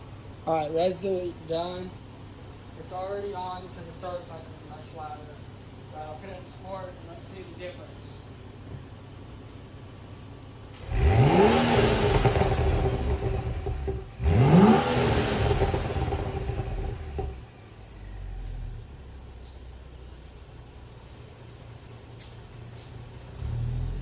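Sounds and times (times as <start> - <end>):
car engine revving and idling: 0.0 - 24.0.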